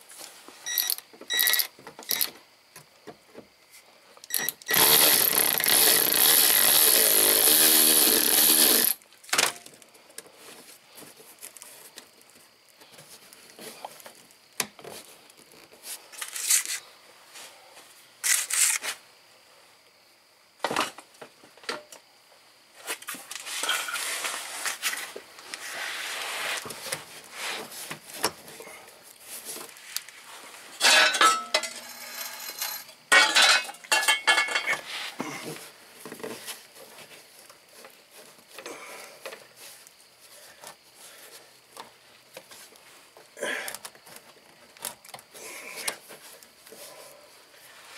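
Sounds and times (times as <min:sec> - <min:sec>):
scraping and rustling: 0:22.8 - 0:28.6
metal tools clinking: 0:30.8 - 0:34.8.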